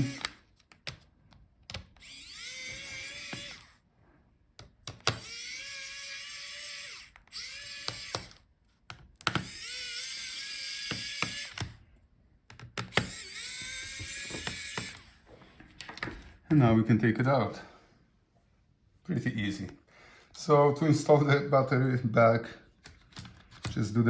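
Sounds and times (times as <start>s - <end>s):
electric screwdriver motor whine: 0.0s - 0.4s, 1.9s - 3.8s, 5.0s - 8.5s, 9.2s - 11.8s, 12.8s - 15.2s
sharp clicks: 0.0s - 1.0s.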